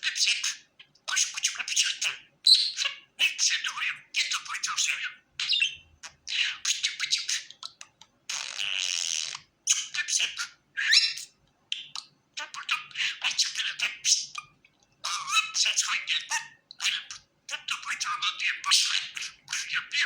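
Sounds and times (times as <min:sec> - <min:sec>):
budgerigar chattering and chirping: 0:00.0 - 0:20.0.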